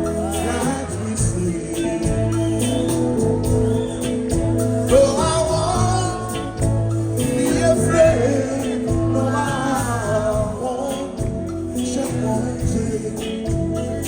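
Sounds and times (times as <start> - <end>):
song with singing voice: 0.0 - 14.0.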